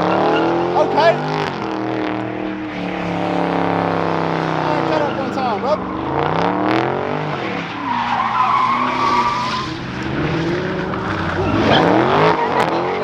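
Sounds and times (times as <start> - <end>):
tyres squealing: 0.0 - 6.3, 7.5 - 13.0
car engine revving: 0.0 - 13.0.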